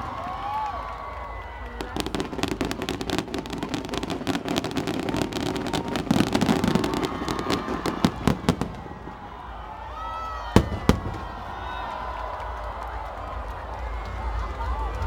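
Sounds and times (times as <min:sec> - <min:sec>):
fireworks crackling and popping: 0:00.0 - 0:15.0
loud firework bang: 0:10.6 - 0:11.7.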